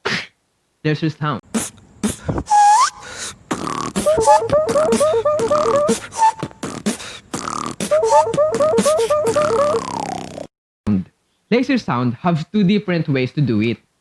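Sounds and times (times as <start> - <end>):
beatboxing laser-like zaps: 1.5 - 2.7, 3.5 - 10.4
mouth kick and snare sounds: 1.6 - 2.5.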